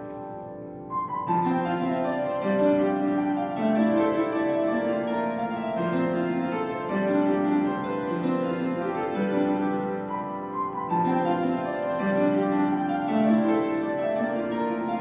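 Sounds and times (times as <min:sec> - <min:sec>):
slow piano melody: 0:00.0 - 0:15.0.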